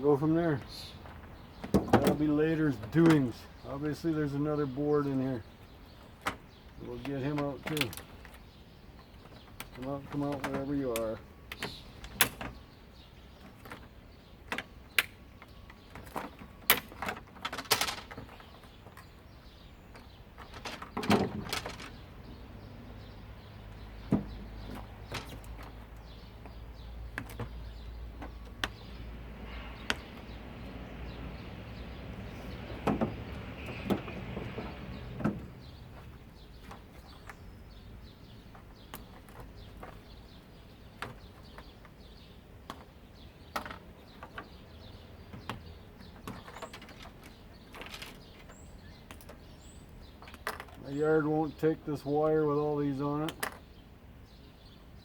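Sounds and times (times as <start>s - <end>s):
parts clicking and clattering: 6.0s - 8.4s, 9.0s - 12.7s, 13.4s - 19.2s, 19.9s - 22.2s, 23.7s - 29.0s, 38.1s - 50.9s.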